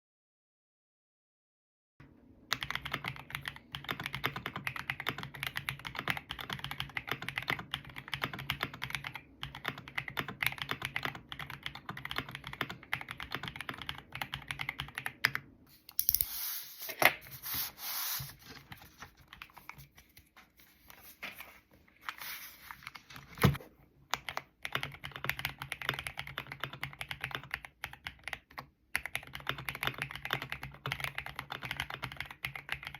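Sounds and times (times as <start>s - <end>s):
mechanical keyboard typing: 2.5s - 16.3s, 24.1s - 32.9s.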